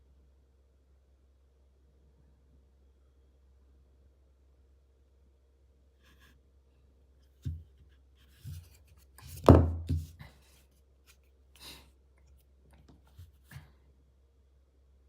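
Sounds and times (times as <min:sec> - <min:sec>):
light scraping and rustling: 0:06.0 - 0:06.4, 0:07.4 - 0:11.3
object knocking on hard surface: 0:09.2 - 0:10.2.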